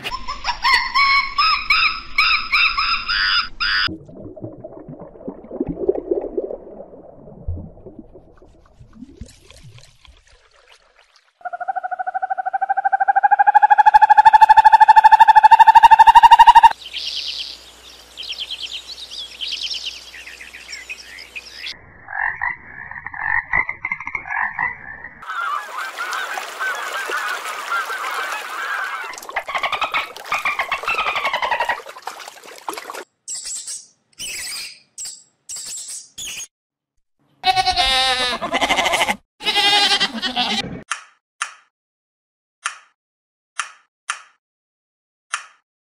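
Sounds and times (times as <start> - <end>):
animal calls: 11.4 - 16.7.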